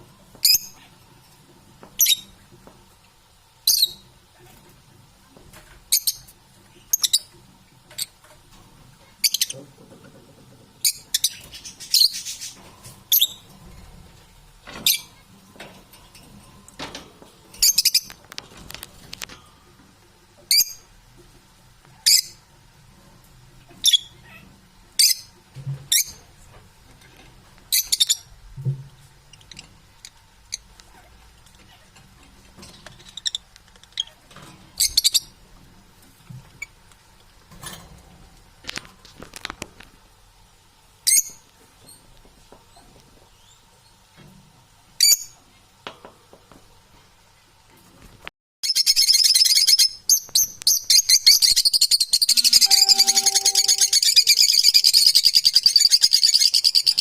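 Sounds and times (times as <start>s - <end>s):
parrot chirping and squeaking: 0.4s - 0.8s, 2.0s - 2.3s, 3.7s - 4.0s, 6.9s - 7.3s, 10.8s - 13.4s, 17.6s - 18.1s, 23.8s - 24.4s, 34.8s - 35.3s, 48.6s - 57.0s.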